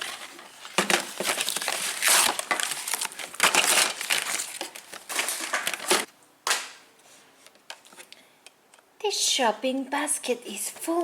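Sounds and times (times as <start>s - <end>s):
plastic packaging crinkling: 0.0s - 6.1s.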